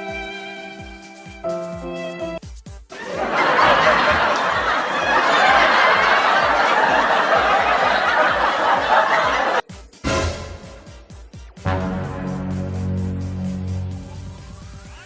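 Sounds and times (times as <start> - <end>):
crowd laughing: 2.9 - 9.6.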